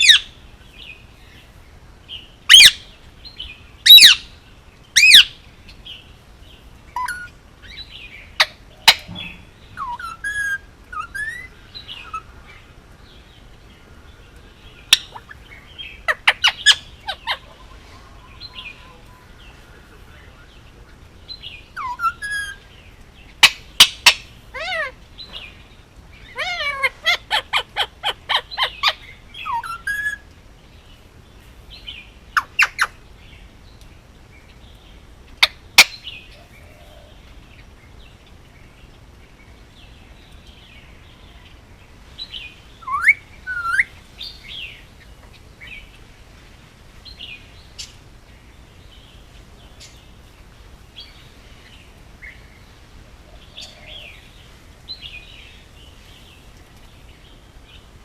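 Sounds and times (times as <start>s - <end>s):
parakeet shrill calls: 0.0s - 0.3s, 2.5s - 2.8s, 3.8s - 4.3s, 5.0s - 5.4s, 7.0s - 7.8s, 9.8s - 12.3s, 16.0s - 19.5s, 21.8s - 22.6s, 23.4s - 25.0s, 26.2s - 30.2s, 42.8s - 43.9s.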